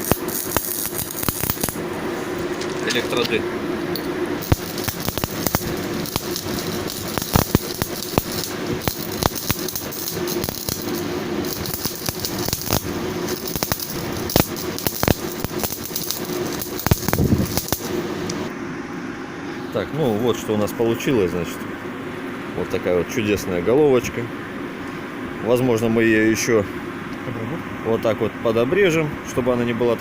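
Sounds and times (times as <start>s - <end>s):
welding arc crackling: 0.0s - 18.5s
steady hum: 0.0s - 30.0s.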